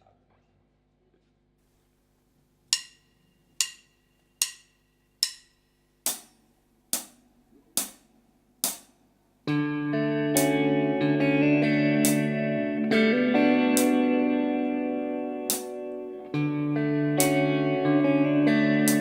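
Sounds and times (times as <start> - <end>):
guitar: 9.4 - 19.0
sharp count-in clicks: 12.0 - 12.3.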